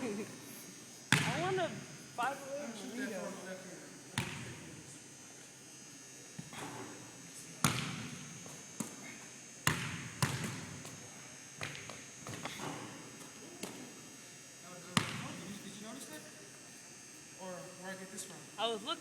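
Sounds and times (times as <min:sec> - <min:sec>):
basketball bouncing on hard court: 0:01.1 - 0:01.5, 0:07.6 - 0:08.1, 0:09.7 - 0:10.9.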